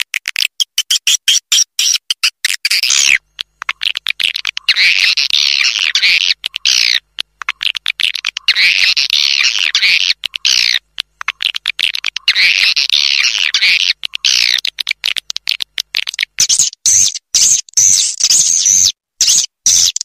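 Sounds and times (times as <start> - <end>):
recorded swiftlet twittering: 0.6 - 20.0.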